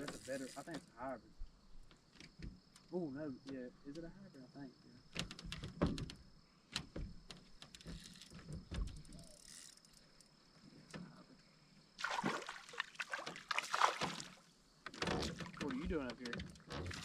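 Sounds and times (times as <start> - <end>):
water splashing: 12.0 - 14.5
light knocks and clicks of handling: 14.8 - 16.9.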